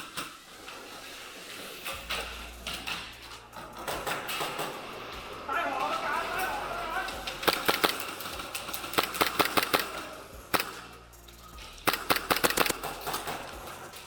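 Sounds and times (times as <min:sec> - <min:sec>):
airsoft guns firing: 0:05.8 - 0:11.0, 0:11.8 - 0:13.9.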